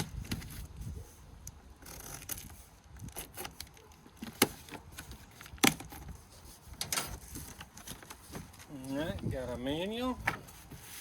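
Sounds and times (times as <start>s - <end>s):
cardboard box rustling and scraping: 10.3s - 11.0s.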